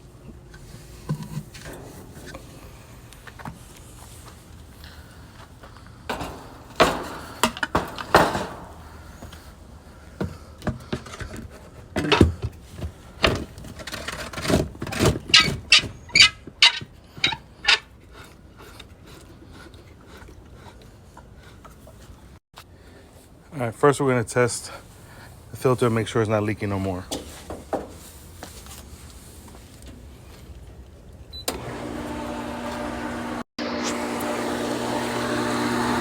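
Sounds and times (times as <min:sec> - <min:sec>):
hard objects knocking: 0:06.1 - 0:09.4
sharp clicks and knocks: 0:06.1 - 0:09.4.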